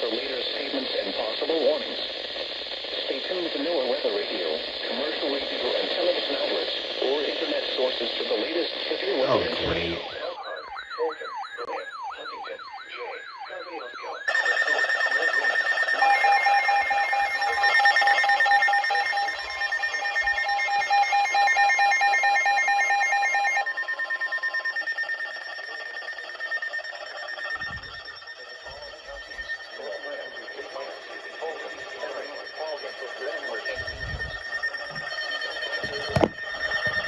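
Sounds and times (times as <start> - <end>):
overlapping beeping alert tones: 9.3 - 37.0.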